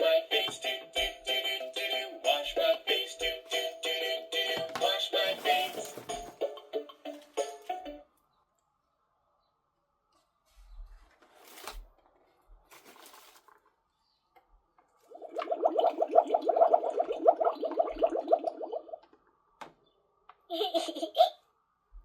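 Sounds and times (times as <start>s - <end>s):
water bubbling and splashing: 15.1s - 19.0s.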